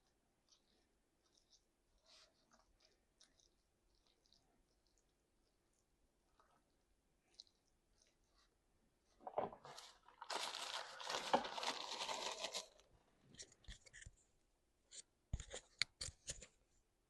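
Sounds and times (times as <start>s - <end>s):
food packaging crinkling: 9.2s - 14.1s.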